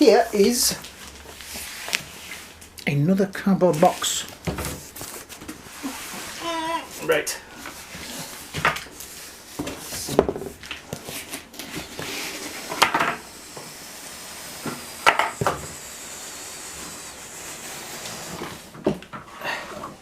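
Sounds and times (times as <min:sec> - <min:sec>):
cardboard rustling: 0:03.8 - 0:12.8.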